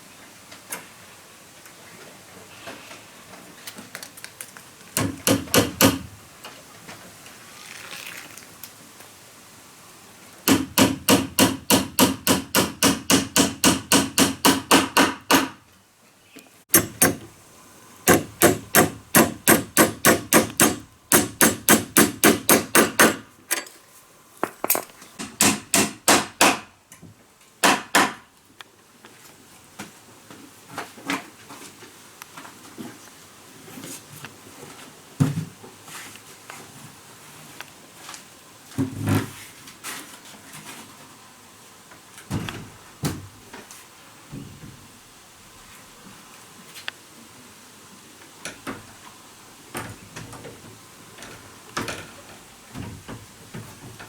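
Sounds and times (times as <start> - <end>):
hammer blows: 16.7 - 17.3, 18.1 - 23.2.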